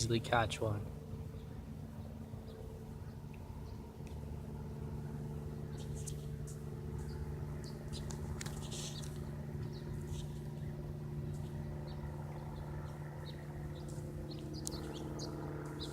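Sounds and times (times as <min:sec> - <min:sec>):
propeller plane engine droning: 0:00.0 - 0:15.9.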